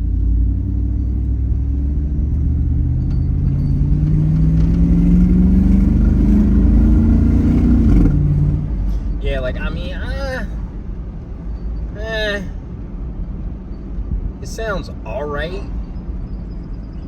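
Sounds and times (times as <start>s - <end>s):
truck engine accelerating: 0.0s - 9.8s.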